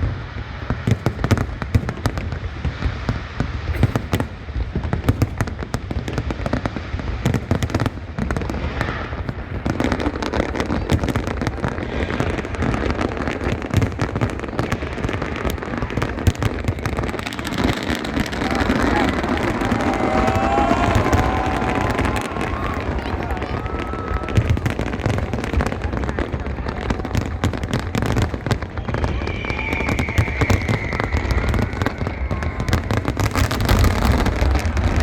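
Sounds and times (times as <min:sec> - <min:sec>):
fireworks banging and crackling: 0:00.0 - 0:35.0
crowd voices: 0:08.0 - 0:35.0.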